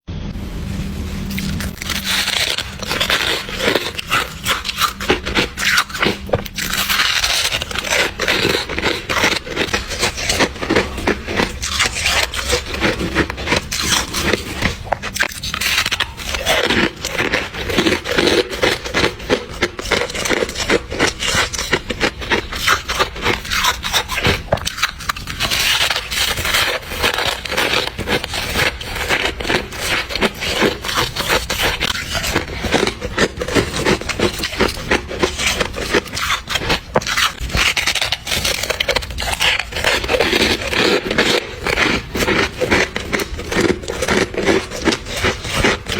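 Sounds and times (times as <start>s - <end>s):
chewing crunchy frost ice: 0.6s - 45.9s.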